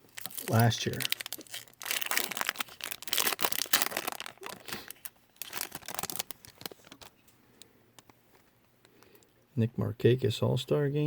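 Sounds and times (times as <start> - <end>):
plastic wrapper tearing and crinkling: 0.0 - 7.1.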